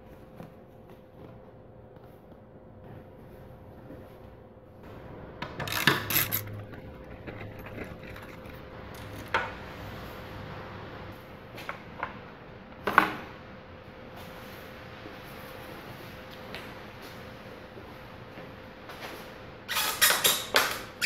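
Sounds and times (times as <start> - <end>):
faint steady hum: 0.0 - 19.7
hand tools and metal parts clinking: 5.4 - 10.0.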